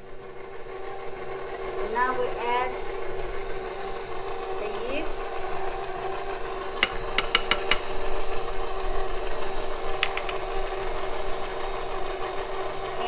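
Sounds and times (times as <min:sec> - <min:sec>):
stand mixer running: 0:00.0 - 0:13.0.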